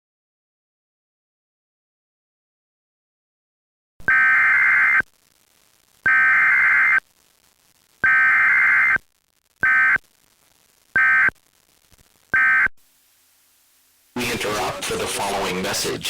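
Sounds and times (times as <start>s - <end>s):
digital data tone bursts: 4.0s - 5.1s, 6.0s - 7.0s, 8.0s - 9.0s, 9.6s - 10.0s, 11.0s - 11.4s, 12.3s - 12.7s.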